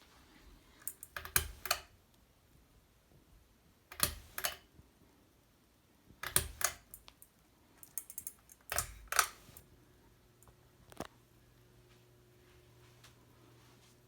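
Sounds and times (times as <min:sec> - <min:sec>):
pull-chain switch clicking: 0:03.9 - 0:04.6, 0:06.2 - 0:07.2, 0:07.8 - 0:09.6.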